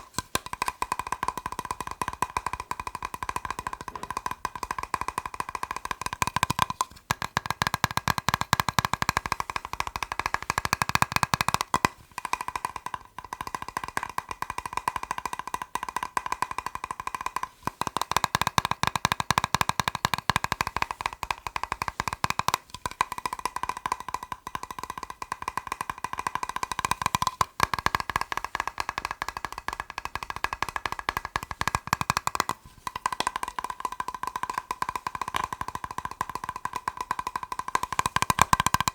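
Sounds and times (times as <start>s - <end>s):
fast tapping on plastic box: 0.0s - 38.9s.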